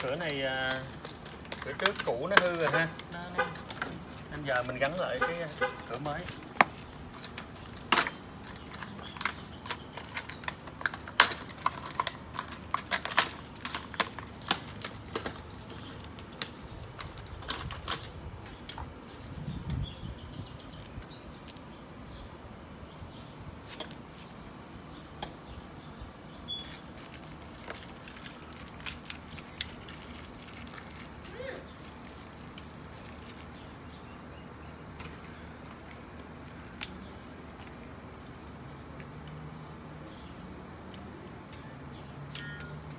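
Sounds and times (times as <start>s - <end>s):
metal hardware clicking and clinking: 7.3s - 14.9s, 42.3s - 42.9s.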